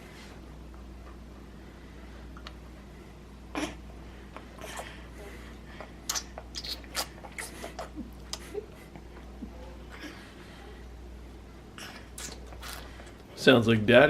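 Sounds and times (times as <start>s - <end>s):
baby sucking on a bottle: 6.0s - 8.4s, 11.8s - 13.2s.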